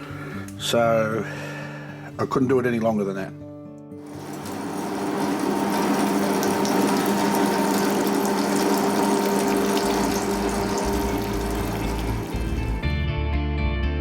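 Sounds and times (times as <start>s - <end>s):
coolant hissing: 4.0s - 12.8s
bandsaw hum: 4.1s - 12.8s.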